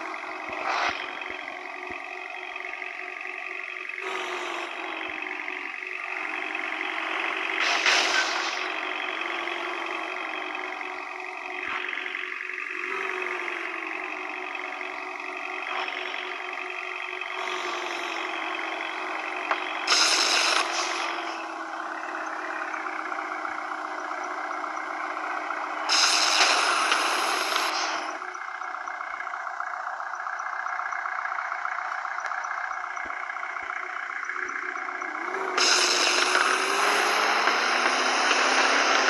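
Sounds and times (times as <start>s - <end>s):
vehicle engine running: 0.0s - 39.0s
hissing noise surges: 19.8s - 21.3s, 25.8s - 28.2s, 35.4s - 39.0s.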